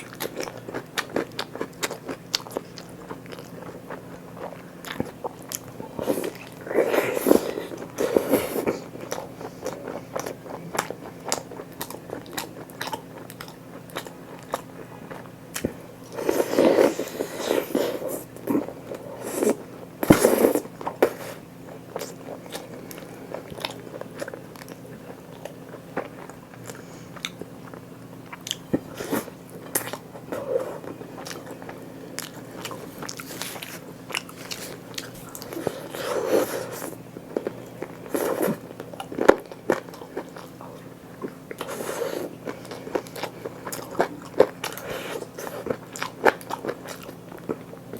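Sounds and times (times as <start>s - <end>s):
chewing with wet mouth clicks: 0.0s - 6.7s, 9.0s - 16.2s, 21.9s - 35.7s, 42.4s - 47.9s.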